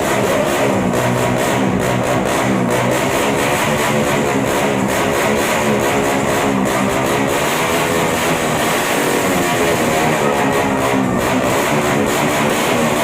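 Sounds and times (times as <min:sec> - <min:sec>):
motorcycle engine with loud exhaust: 0:00.0 - 0:13.0.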